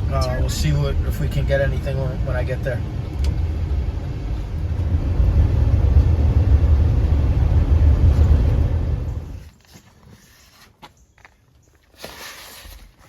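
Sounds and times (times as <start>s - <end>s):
vehicle road and engine rumble: 0.0s - 10.0s.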